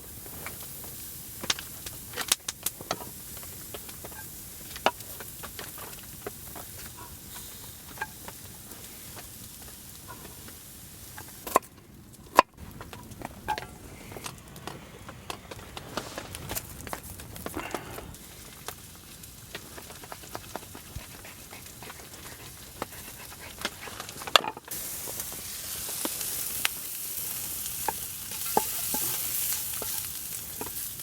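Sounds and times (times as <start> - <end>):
campfire crackling: 0.0 - 31.0.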